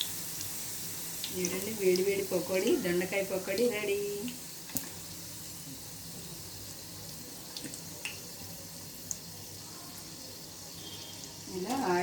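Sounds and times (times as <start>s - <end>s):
oil sizzling while deep-frying: 0.0s - 12.0s
oil popping: 7.4s - 8.3s.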